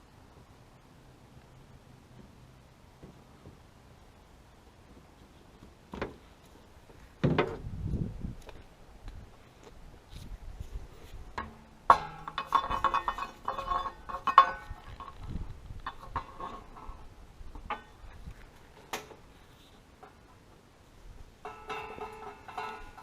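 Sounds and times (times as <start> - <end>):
metal tools clinking: 11.9 - 15.2.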